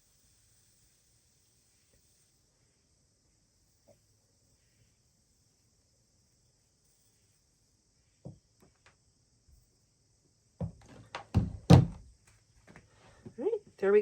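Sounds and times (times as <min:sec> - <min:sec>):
knocks and thuds on a table: 0:10.6 - 0:12.1.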